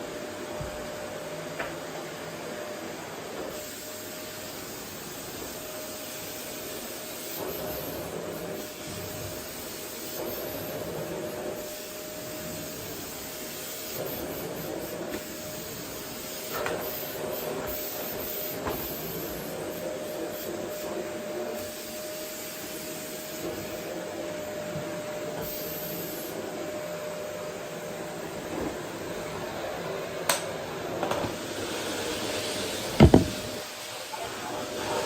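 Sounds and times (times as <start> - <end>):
vacuum cleaner running: 0.0 - 35.0
light knocks: 33.0 - 33.5.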